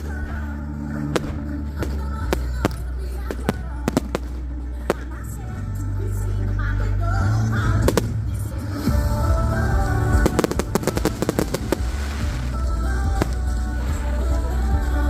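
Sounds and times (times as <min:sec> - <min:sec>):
fireworks bangs and cracks: 0:00.0 - 0:05.3, 0:09.7 - 0:14.6
loud music with heavy bass: 0:00.0 - 0:15.0.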